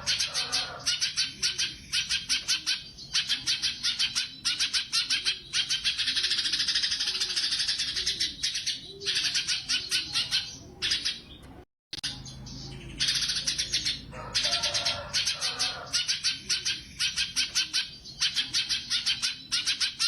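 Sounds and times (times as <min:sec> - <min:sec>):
songbird fast chattering trills: 0:12.0 - 0:20.0.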